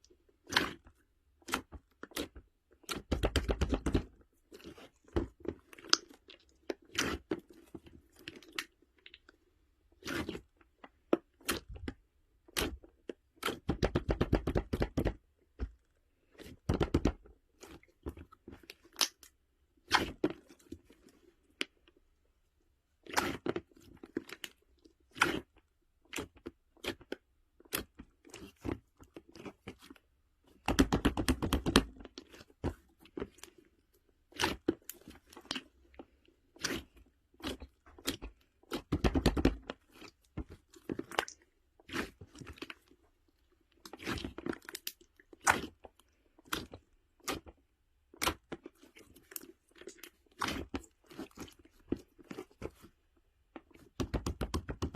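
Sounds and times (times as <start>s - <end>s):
chewing and crunching: 3.8s - 13.6s, 31.8s - 54.0s.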